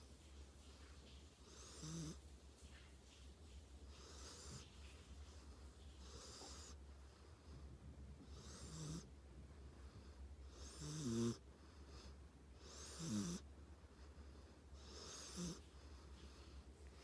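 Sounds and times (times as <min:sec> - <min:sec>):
pet snoring: 0:01.4 - 0:02.2, 0:04.0 - 0:04.7, 0:06.0 - 0:06.8, 0:08.2 - 0:09.1, 0:10.5 - 0:11.4, 0:12.6 - 0:13.4, 0:14.8 - 0:15.7.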